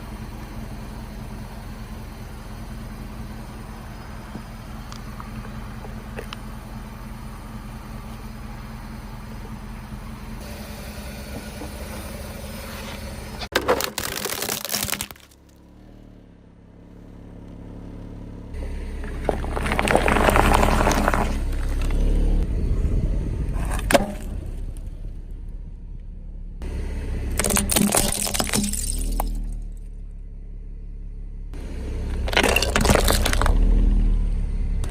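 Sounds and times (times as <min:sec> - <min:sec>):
car engine idling: 0:00.0 - 0:34.9
objects crunching under tyres: 0:03.0 - 0:10.5, 0:11.3 - 0:17.8, 0:18.6 - 0:22.5, 0:23.5 - 0:25.2, 0:27.2 - 0:30.0, 0:31.6 - 0:34.9.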